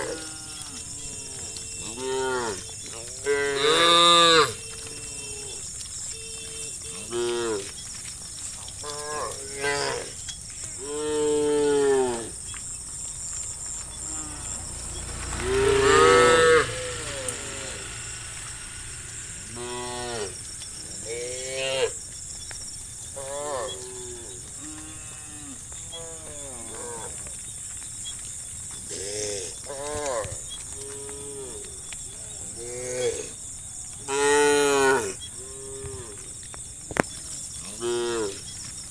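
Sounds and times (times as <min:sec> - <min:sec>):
cows mooing: 0:00.0 - 0:07.8, 0:08.8 - 0:22.0, 0:23.2 - 0:27.2
steady high-pitched whine: 0:12.4 - 0:23.2.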